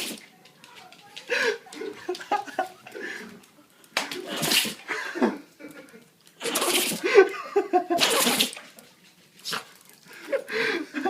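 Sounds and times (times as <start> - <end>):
dog sneezing: 0.0 - 0.2, 4.2 - 4.9, 6.4 - 7.1, 7.9 - 8.6
dog snorting: 6.4 - 7.1.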